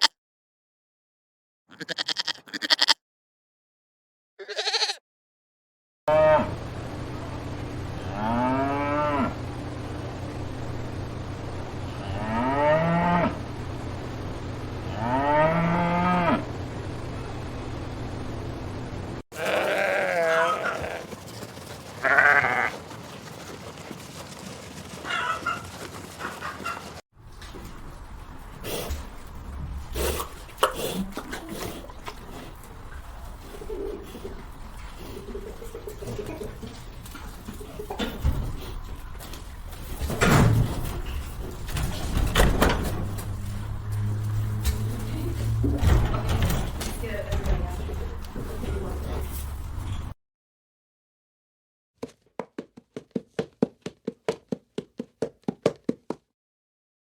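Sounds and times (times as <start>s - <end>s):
animal calling in short bursts: 1.7s - 3.0s, 4.4s - 5.0s
large animal lowing: 19.4s - 26.9s
rapid chattering animal calls: 19.4s - 27.0s.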